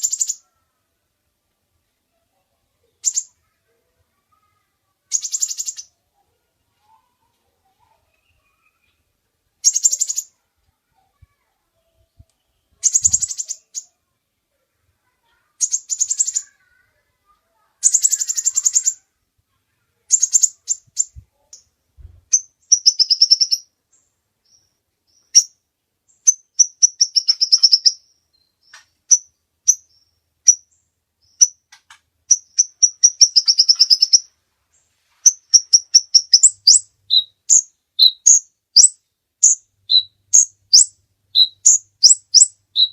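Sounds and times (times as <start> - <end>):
bird fast trilling: 12.8 - 13.9, 17.8 - 19.0, 32.3 - 34.3, 35.3 - 42.9
bird sharp chips: 31.4 - 34.3.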